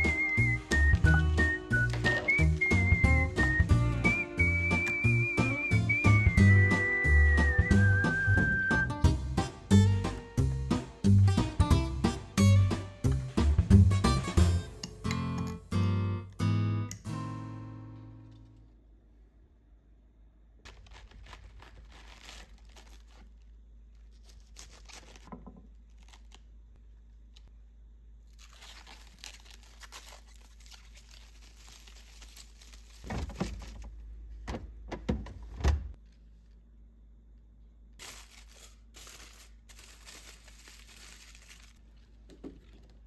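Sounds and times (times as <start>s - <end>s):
packaging crinkling and tearing: 20.6s - 26.6s, 28.2s - 33.9s, 38.0s - 43.0s.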